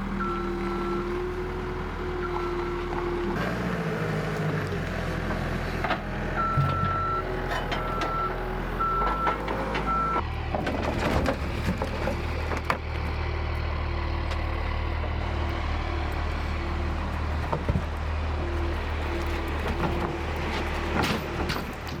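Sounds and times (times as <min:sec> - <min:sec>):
heavy vehicle engine running: 0:00.0 - 0:22.0
reversing alarm beeping: 0:00.1 - 0:01.3, 0:02.2 - 0:03.1, 0:06.4 - 0:10.2.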